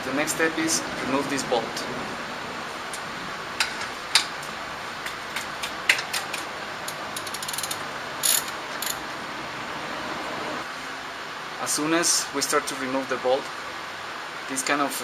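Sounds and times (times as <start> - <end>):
ratchet wrench clicking: 6.9 - 9.0.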